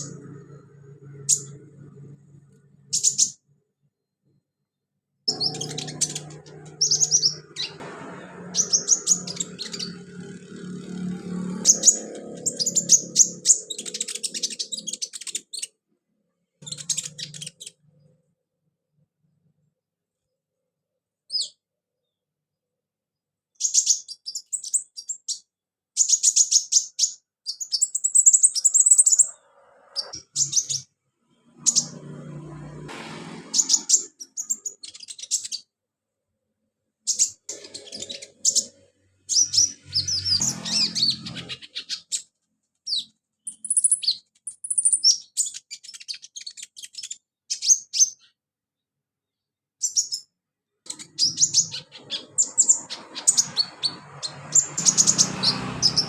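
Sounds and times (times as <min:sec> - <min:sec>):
bird singing high chirps: 0:00.0 - 0:03.5, 0:05.3 - 0:15.8, 0:16.6 - 0:18.1, 0:23.6 - 0:30.9, 0:33.5 - 0:35.7, 0:37.1 - 0:48.4, 0:49.3 - 0:56.0.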